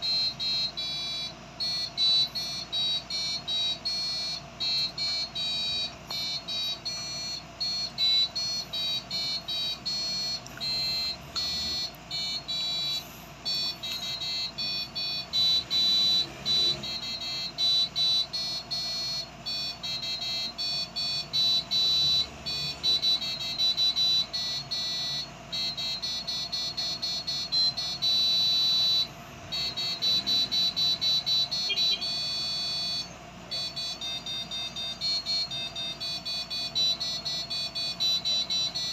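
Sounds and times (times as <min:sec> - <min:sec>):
buzzer beeping a melody: 0:00.0 - 0:38.9
faint steady hum: 0:00.0 - 0:38.9.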